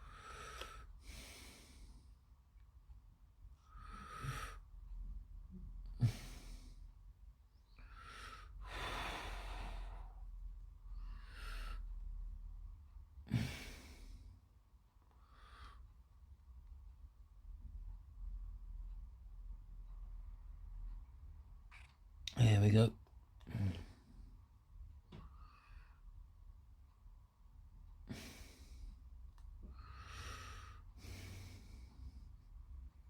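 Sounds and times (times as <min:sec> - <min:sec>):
slow close breathing: 0:00.0 - 0:02.3, 0:03.6 - 0:12.6, 0:13.3 - 0:16.1, 0:25.1 - 0:26.2, 0:28.0 - 0:32.9
faint steady hum: 0:00.0 - 0:33.0.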